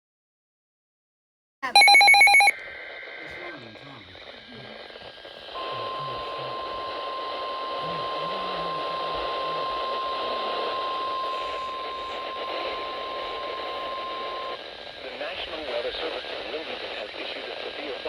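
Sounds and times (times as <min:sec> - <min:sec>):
steady alarm tone: 0:01.6 - 0:02.6, 0:05.5 - 0:14.9
radio static hiss: 0:01.6 - 0:18.0.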